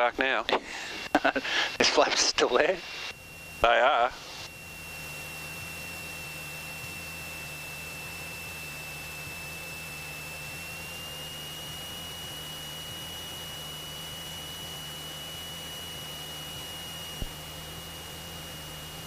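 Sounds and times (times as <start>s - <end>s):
thin high-pitched whine: 0.0s - 19.0s
aircraft engine and airflow hiss: 0.2s - 9.4s.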